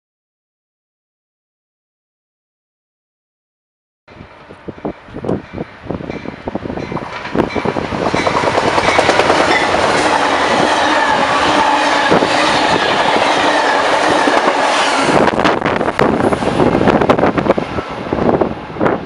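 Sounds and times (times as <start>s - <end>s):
train wheels rushing on rail: 4.1s - 19.0s.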